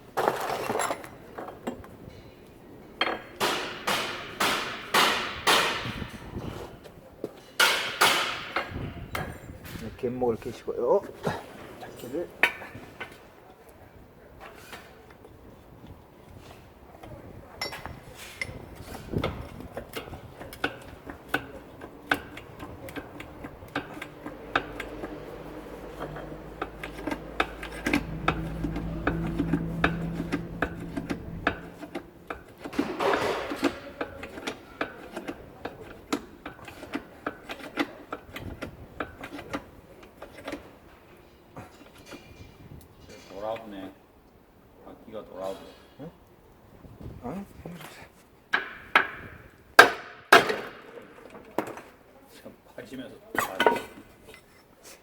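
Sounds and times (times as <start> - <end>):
steady low hum: 22.0 - 33.0.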